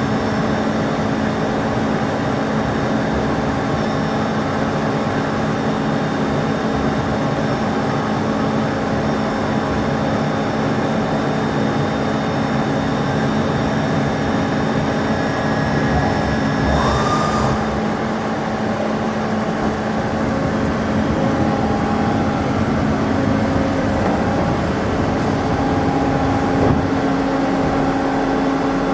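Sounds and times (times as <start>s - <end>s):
lathe humming: 13.5s - 26.6s
rising whine: 13.8s - 19.8s.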